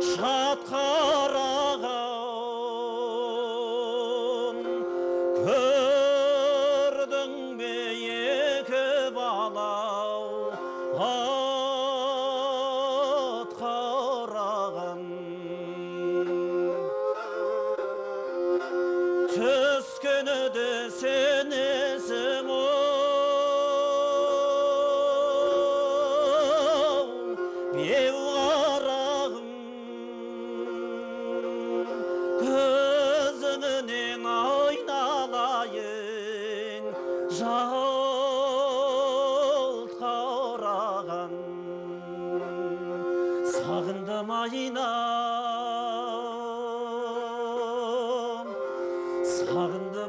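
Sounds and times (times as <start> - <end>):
bowed fiddle melody with vibrato: 0.0 - 50.0
fiddle drone note: 15.0 - 39.1.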